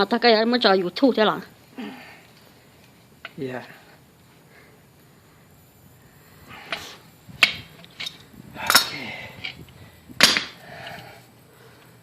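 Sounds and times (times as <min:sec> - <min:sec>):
sharp knocks of hard objects: 0:06.7 - 0:08.1, 0:10.2 - 0:10.6.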